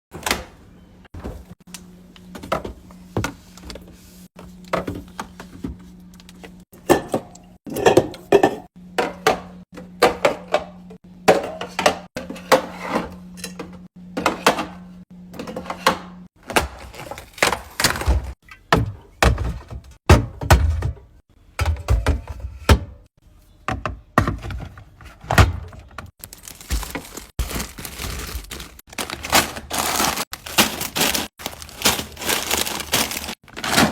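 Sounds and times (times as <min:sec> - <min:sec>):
containers being set down: 0:23.7 - 0:33.9.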